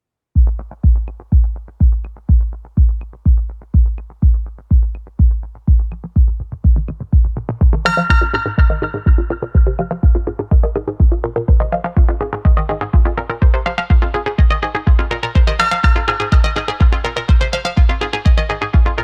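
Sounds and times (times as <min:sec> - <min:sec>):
hi-hat ticks: 0:00.4 - 0:10.9
kick drum beat: 0:00.4 - 0:19.0
bright synthesizer chord: 0:07.9 - 0:19.0.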